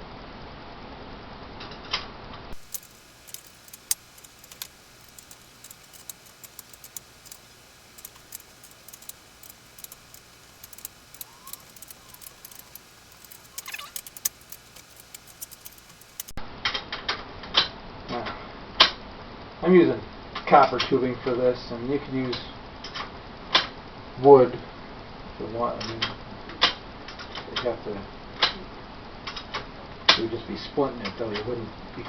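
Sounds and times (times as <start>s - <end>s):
metallic clicks of small hardware: 2.6s - 16.4s.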